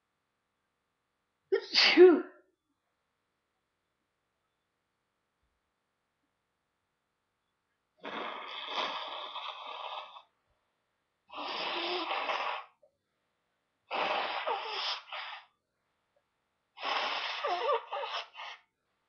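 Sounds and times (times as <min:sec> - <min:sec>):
person blowing nose: 0:08.0 - 0:10.3, 0:11.3 - 0:12.8, 0:13.9 - 0:15.6, 0:16.8 - 0:18.7.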